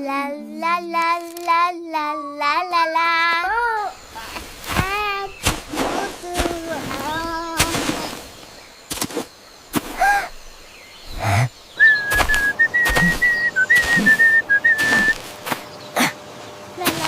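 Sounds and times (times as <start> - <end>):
sharp knocks and thunks: 4.7 - 10.2, 12.1 - 15.7.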